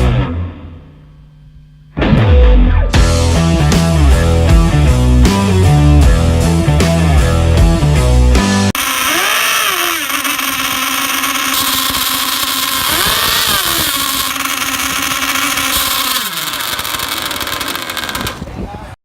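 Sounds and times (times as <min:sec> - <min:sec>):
rc boat engines buzzing: 0:07.4 - 0:19.0.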